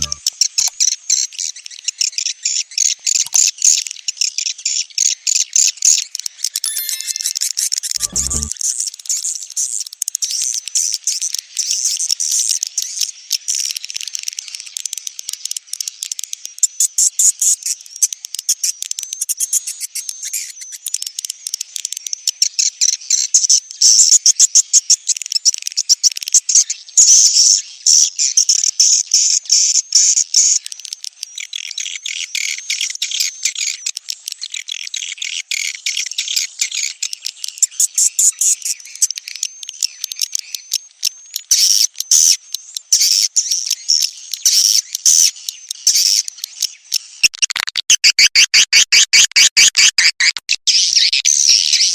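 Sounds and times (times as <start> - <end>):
lower chirping: 0.0 - 0.2.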